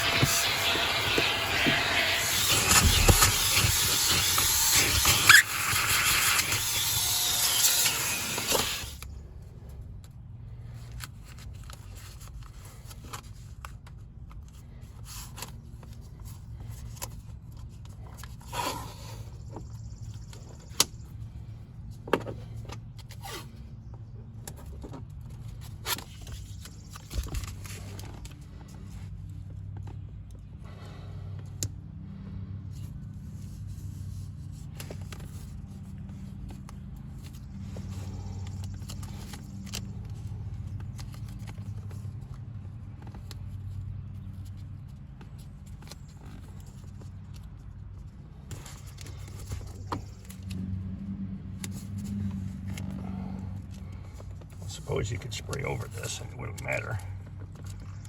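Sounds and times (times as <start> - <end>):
vacuum cleaner running: 0.0 - 9.0
small clicks and scrapes: 0.0 - 30.7, 31.4 - 58.0.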